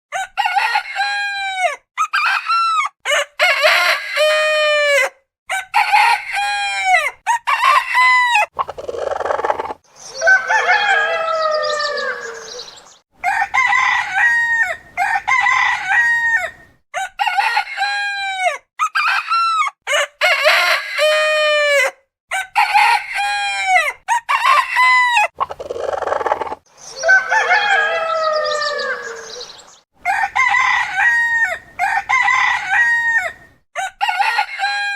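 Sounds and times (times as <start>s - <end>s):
roosters crowing: 0.1s - 34.9s.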